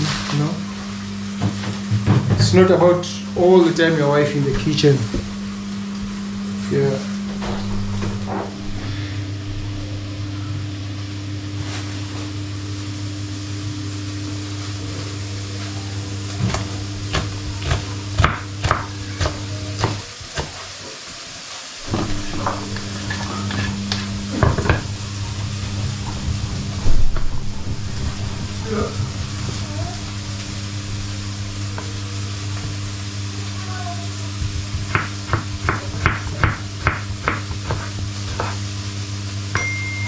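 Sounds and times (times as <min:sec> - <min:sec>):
food sizzling: 0:00.0 - 0:02.3, 0:02.9 - 0:40.0
steady low hum: 0:00.0 - 0:20.0, 0:21.8 - 0:40.0
food stirred in cooking pot: 0:34.2 - 0:39.0.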